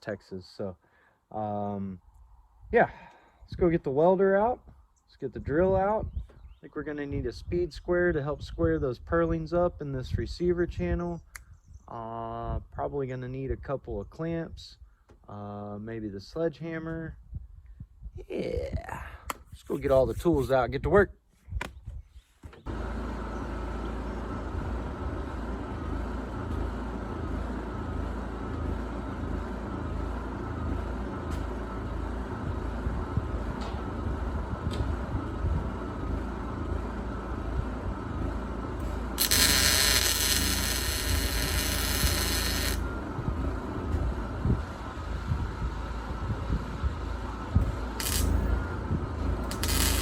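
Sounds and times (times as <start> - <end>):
engine rumbling: 22.6 - 50.0
loud hiss: 39.2 - 42.9, 48.0 - 48.5, 49.4 - 50.0.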